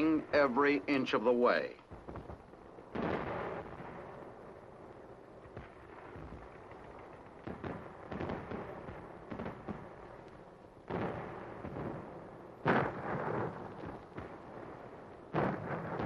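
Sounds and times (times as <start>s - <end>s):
gunshots crackling: 1.9s - 4.4s, 5.4s - 10.2s, 10.8s - 16.0s
heavy explosion blasts: 2.0s - 4.6s.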